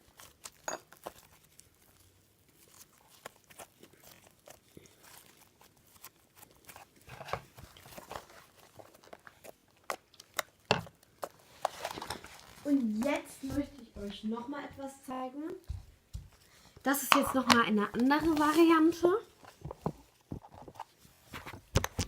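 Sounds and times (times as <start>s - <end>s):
sticky slime clicks and crackles: 8.6s - 11.7s.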